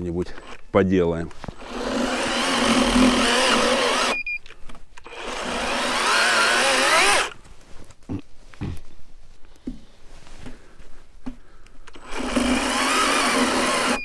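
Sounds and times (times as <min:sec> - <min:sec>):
electric chainsaw cutting wood: 0:01.5 - 0:04.2, 0:05.1 - 0:07.4, 0:12.0 - 0:14.0.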